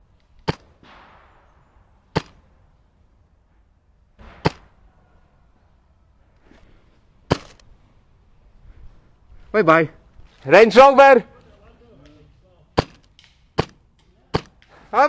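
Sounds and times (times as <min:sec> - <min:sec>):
airsoft rifle shots: 0:00.4 - 0:02.5, 0:04.2 - 0:04.8, 0:12.8 - 0:14.7.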